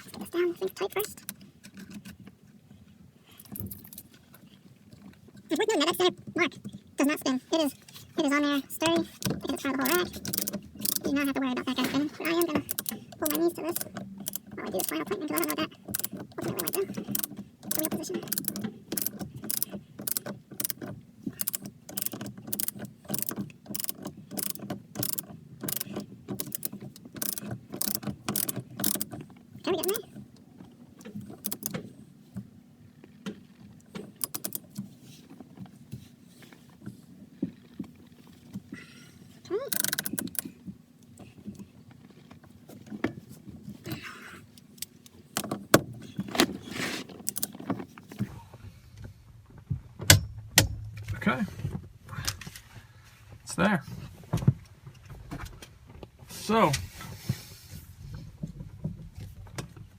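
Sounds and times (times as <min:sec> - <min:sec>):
socket ratchet clicking: 0:09.5 - 0:11.2, 0:12.2 - 0:29.2, 0:31.4 - 0:31.8, 0:34.2 - 0:34.8, 0:39.7 - 0:40.5, 0:47.2 - 0:47.6
hand tools scraping: 0:46.2 - 0:47.4.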